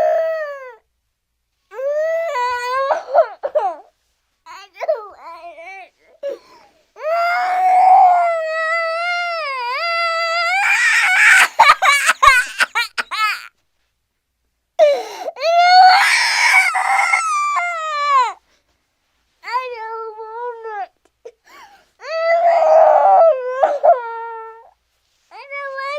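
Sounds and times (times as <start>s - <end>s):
cartoon baby crying: 7.0s - 13.5s, 15.5s - 18.4s.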